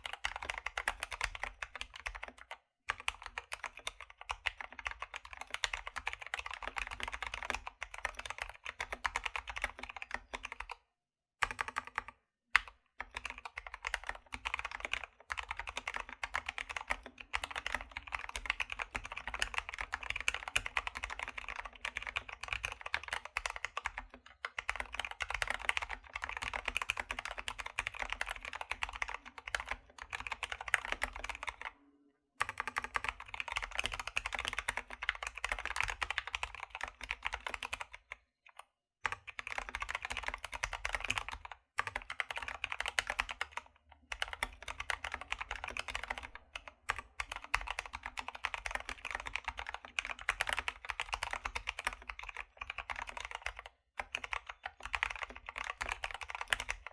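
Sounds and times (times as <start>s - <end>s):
mechanical keyboard typing: 0.0s - 10.8s, 11.4s - 31.8s, 32.4s - 56.9s.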